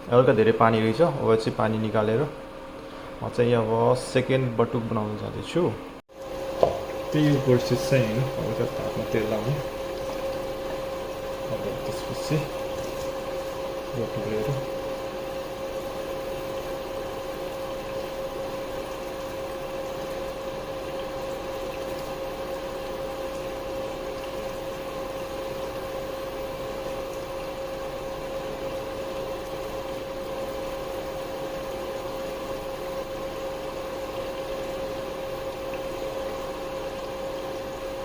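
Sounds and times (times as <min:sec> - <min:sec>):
machine hum with steady tone: 0:00.0 - 0:38.0.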